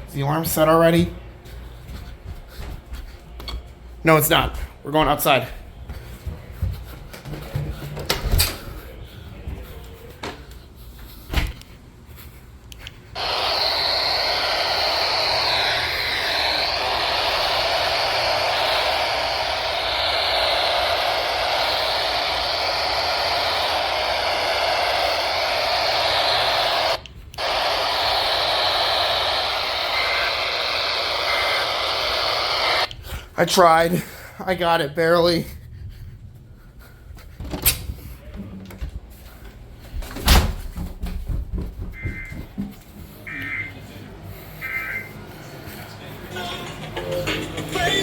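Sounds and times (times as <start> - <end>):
radio static hiss: 13.2 - 33.8, 43.2 - 48.0
faint wavering whistles: 43.3 - 43.8, 44.6 - 45.2.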